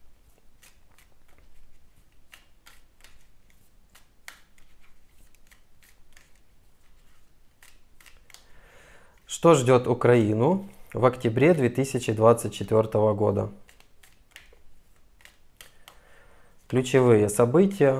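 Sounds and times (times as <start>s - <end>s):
playing cards clicking: 0.6s - 8.5s, 13.6s - 17.0s.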